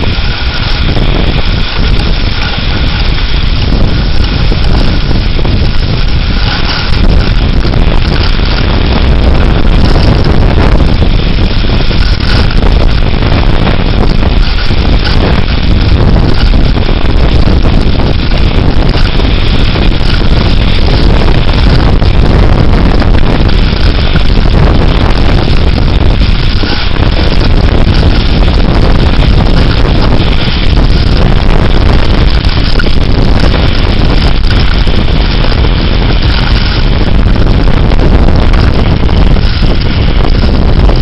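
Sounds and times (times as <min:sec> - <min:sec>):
strong wind buffeting microphone: 0:00.0 - 0:41.0.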